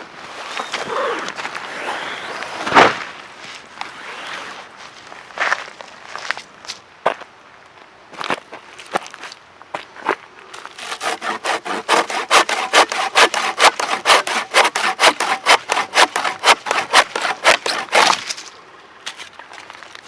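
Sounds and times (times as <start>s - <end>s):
hand saw cutting wood: 10.8s - 18.4s.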